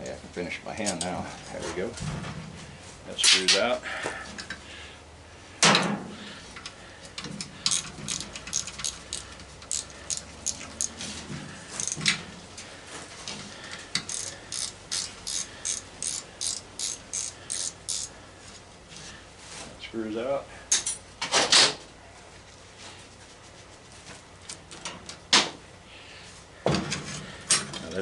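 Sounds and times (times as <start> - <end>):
hand ratchet clicking: 6.6 - 11.0, 11.8 - 12.1, 13.7 - 18.2.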